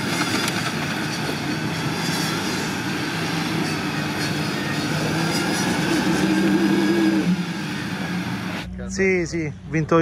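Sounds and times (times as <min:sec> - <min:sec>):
off-road vehicle engine droning: 0:00.0 - 0:10.0.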